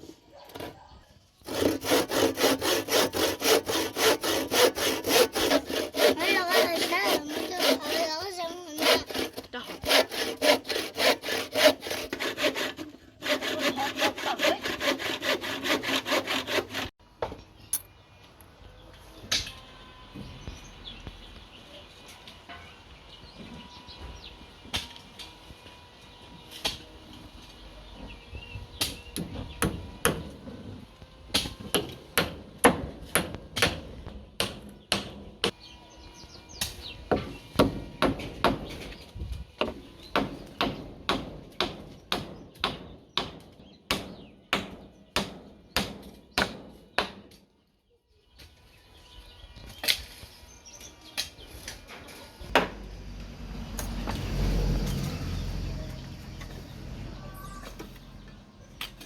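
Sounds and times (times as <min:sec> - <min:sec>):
hand saw cutting wood: 0:01.4 - 0:16.9.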